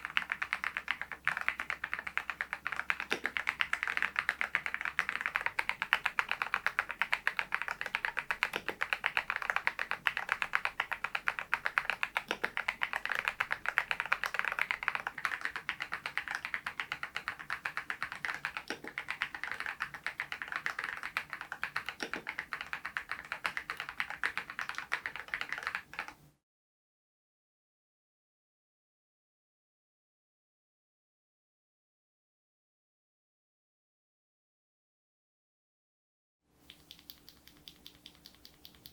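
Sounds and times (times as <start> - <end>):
mechanical keyboard typing: 0.0 - 26.2, 36.7 - 38.9.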